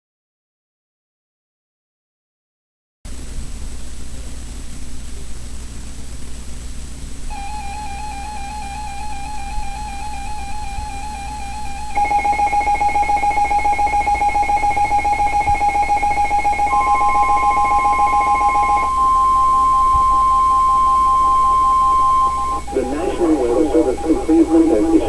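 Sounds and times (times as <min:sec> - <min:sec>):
electronic music pulsing: 0:07.3 - 0:25.0
weather radio alarm tone: 0:07.3 - 0:25.0.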